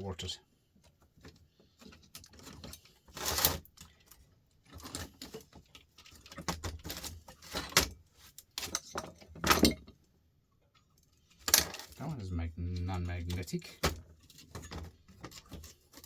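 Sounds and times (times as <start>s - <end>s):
metal scrap parts clattering: 8.6s - 9.9s, 11.4s - 12.0s.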